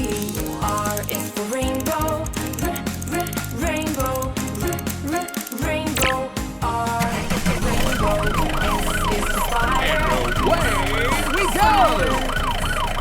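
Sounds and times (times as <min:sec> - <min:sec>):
siren yelping: 0:07.7 - 0:13.0.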